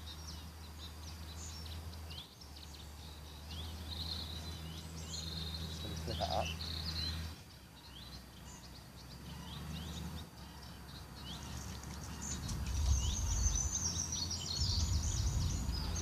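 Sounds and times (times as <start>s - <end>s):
bird twittering song: 0.0s - 16.0s
low rumble: 12.3s - 16.0s.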